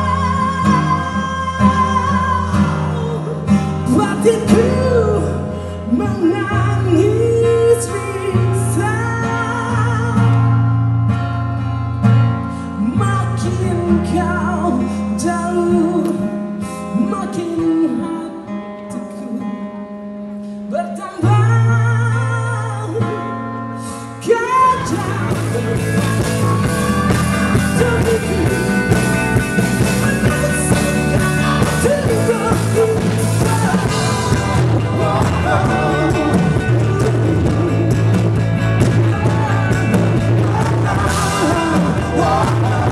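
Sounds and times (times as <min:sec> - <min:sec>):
person singing: 0:00.0 - 0:10.2, 0:24.2 - 0:42.9
live pop-rock band: 0:00.0 - 0:42.9.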